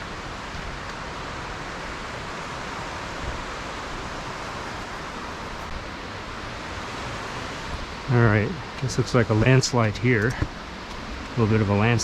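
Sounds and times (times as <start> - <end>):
creek and waterfall rushing: 4.0 - 5.8.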